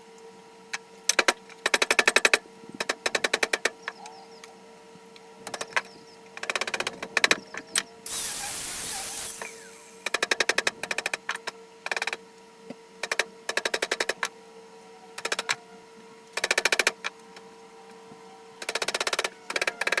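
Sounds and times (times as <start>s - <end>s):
hydraulic pump chattering: 8.1s - 10.2s.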